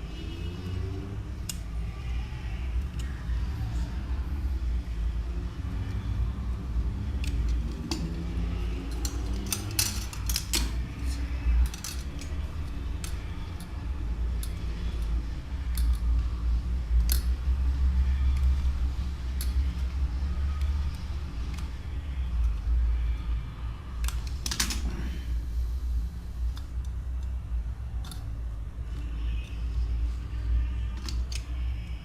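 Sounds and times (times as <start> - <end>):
hand tool clicking and scraping: 7.2 - 13.7.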